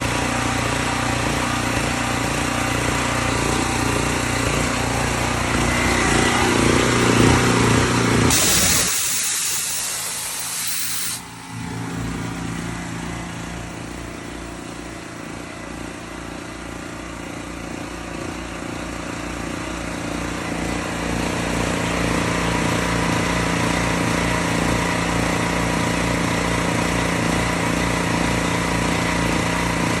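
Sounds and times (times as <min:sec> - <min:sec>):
engine running steadily: 0:00.0 - 0:30.0
loud hissing rush: 0:05.4 - 0:12.3.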